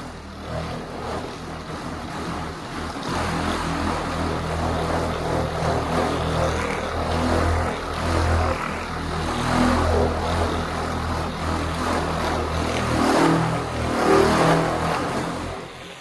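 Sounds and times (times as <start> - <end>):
electric polisher motor drone: 0.0 - 16.0.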